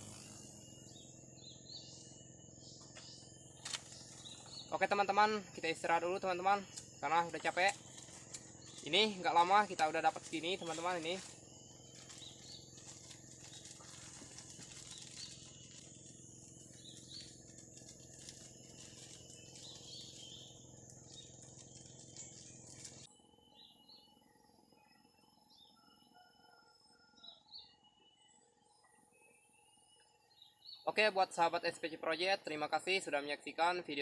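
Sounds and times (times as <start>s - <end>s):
steady high hiss: 0.0s - 13.6s
birds chirping: 0.0s - 34.0s.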